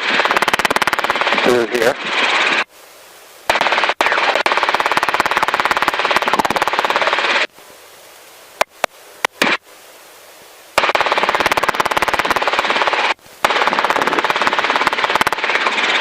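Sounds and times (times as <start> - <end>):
helicopter rotor chopping: 0.0 - 2.7, 3.5 - 7.5, 10.8 - 16.0.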